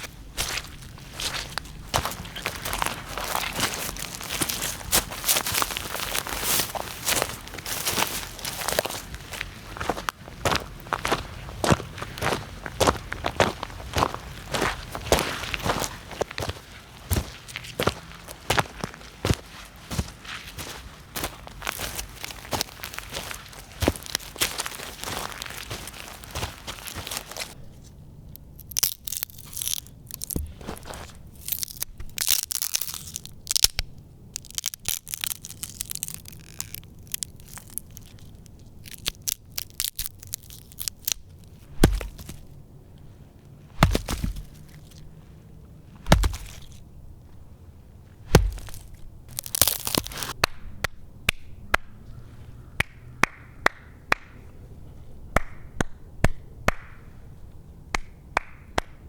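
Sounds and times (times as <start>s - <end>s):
crackling and crunching: 0.0s - 50.5s
heavy thuds: 41.7s - 42.4s, 43.7s - 45.1s, 45.9s - 46.8s, 48.2s - 49.0s.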